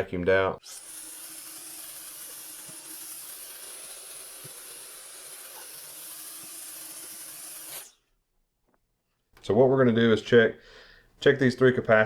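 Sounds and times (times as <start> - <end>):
vacuum cleaner running: 0.7 - 7.9.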